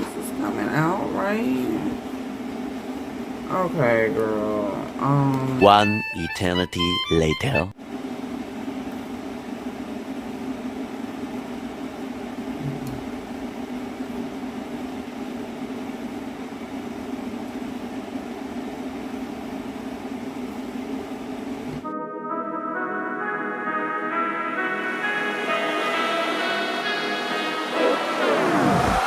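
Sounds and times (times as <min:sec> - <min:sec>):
air conditioner humming: 0:00.0 - 0:29.0
brass music: 0:05.6 - 0:07.7, 0:21.8 - 0:29.0.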